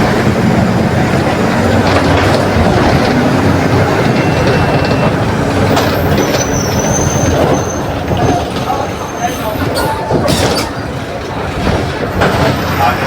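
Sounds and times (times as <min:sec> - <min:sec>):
bus body rattling: 0:00.0 - 0:13.0
bus diesel engine running: 0:00.0 - 0:13.0.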